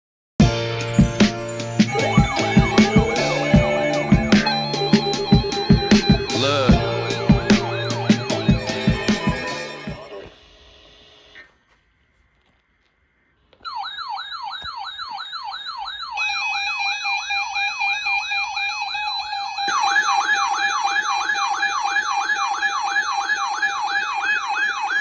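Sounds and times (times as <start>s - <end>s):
electronic siren sweeping down: 0.4s - 10.3s, 13.7s - 25.0s
steady high tones: 0.4s - 11.0s
louder sweeping siren layer: 0.8s - 10.3s, 13.7s - 25.0s.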